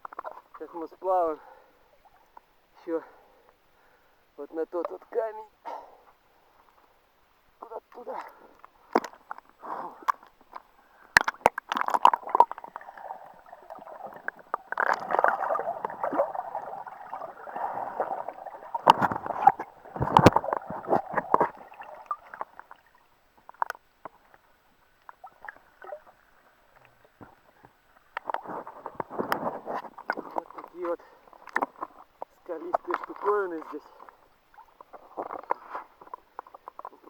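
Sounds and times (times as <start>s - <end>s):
water splashing from swimming: 7.9s - 37.0s.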